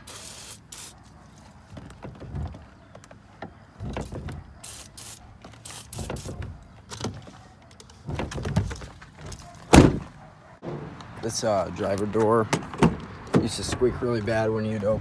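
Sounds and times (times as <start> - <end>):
spray hissing: 0.0 - 1.0, 4.6 - 6.4
car door clicks and knocks: 8.1 - 10.9, 12.5 - 13.5.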